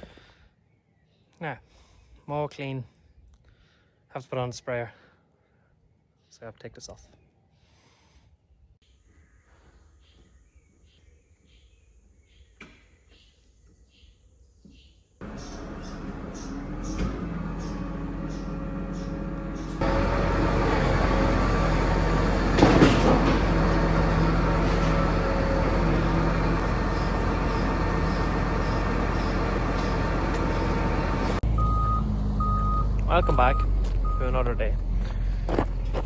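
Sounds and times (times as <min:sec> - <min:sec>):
tractor diesel engine running: 0:15.2 - 0:36.0
short electronic beeps: 0:31.6 - 0:34.3.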